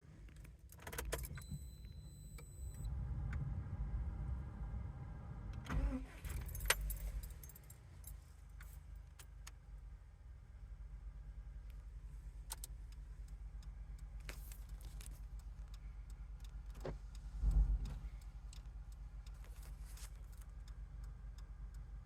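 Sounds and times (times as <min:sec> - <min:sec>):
ignition key jangling and clicking: 0:00.2 - 0:02.8, 0:05.6 - 0:09.6, 0:12.4 - 0:17.1, 0:17.8 - 0:20.7
vehicle engine starting and idling: 0:00.2 - 0:22.0.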